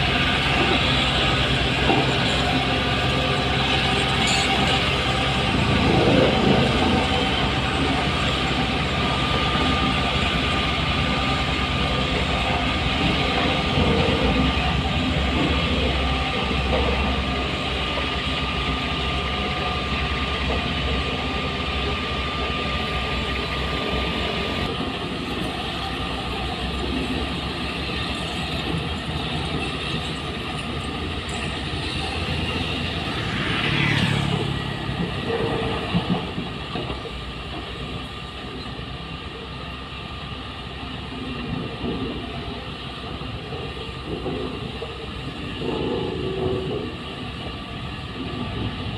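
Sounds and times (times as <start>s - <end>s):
diesel construction machinery running: 0.0s - 48.9s
falling squeal: 3.7s - 5.6s.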